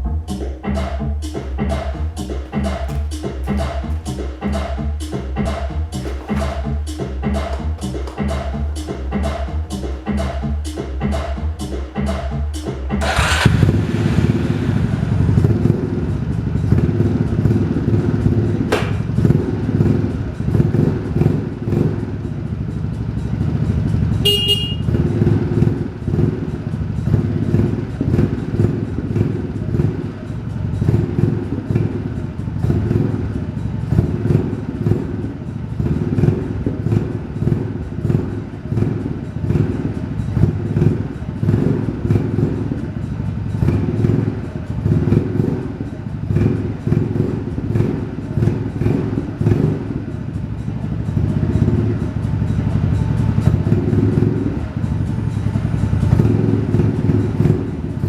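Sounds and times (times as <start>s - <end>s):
scooter engine running: 0.0s - 58.0s
short high-pitched beep: 24.3s - 24.9s.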